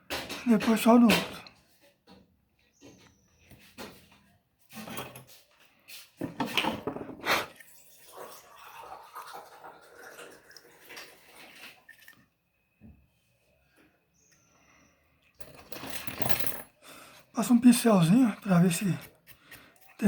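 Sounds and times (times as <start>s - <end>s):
knocks and clatter on workbench: 0.0s - 3.0s, 6.2s - 7.2s.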